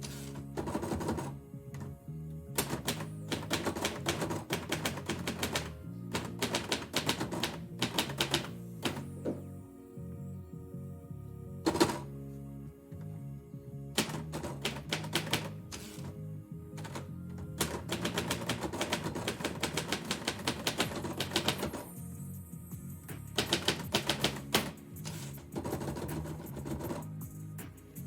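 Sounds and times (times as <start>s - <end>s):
background music: 0.0s - 28.0s
typewriter keys clicking: 2.6s - 9.1s, 14.0s - 16.1s, 16.8s - 21.9s, 23.1s - 27.1s.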